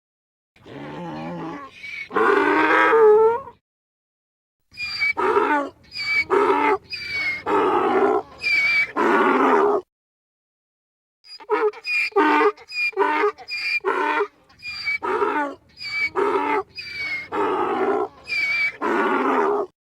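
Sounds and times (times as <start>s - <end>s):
donkey braying: 4.8s - 9.8s, 11.3s - 19.7s.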